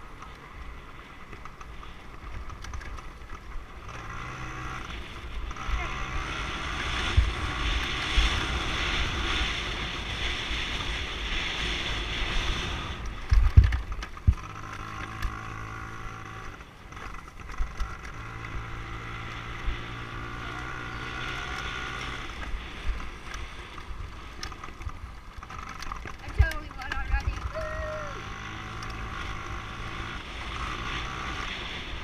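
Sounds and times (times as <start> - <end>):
dirt bike engine running: 0.0 - 32.0
wind buffeting microphone: 17.6 - 32.0.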